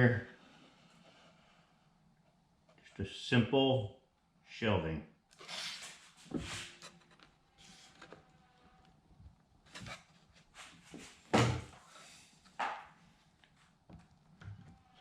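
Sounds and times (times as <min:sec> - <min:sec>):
wooden knocks and clunks: 0:10.9 - 0:11.8, 0:12.6 - 0:13.0.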